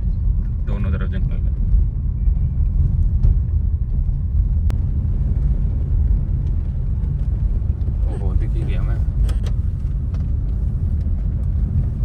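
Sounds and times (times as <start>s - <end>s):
car engine and tyre rumble: 0.0s - 12.0s.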